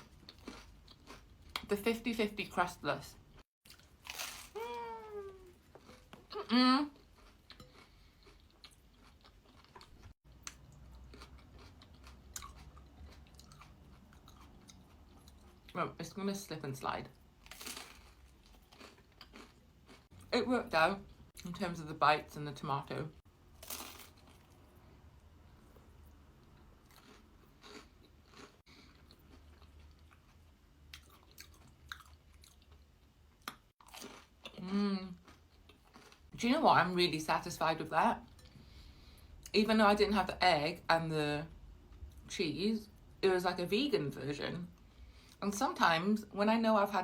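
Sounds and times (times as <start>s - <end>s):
person chewing crunchy bread: 0.0s - 1.6s, 3.4s - 15.7s, 17.4s - 20.3s, 23.5s - 36.3s.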